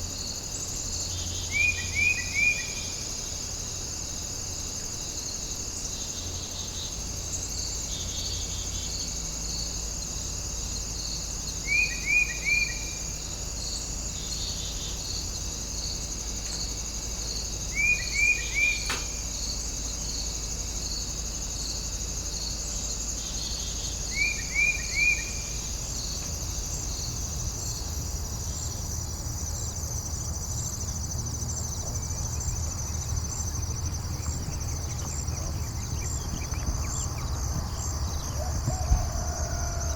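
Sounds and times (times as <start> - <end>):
crickets chorus: 0.0 - 39.9
short chirping calls: 32.3 - 38.4.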